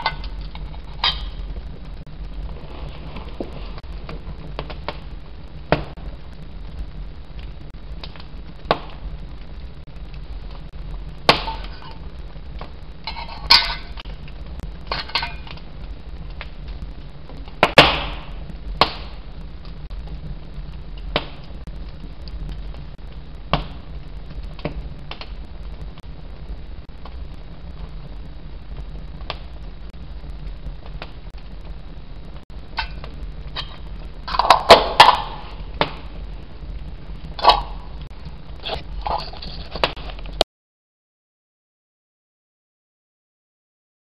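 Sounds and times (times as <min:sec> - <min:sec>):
flint and steel striking: 0:11.3 - 0:11.9.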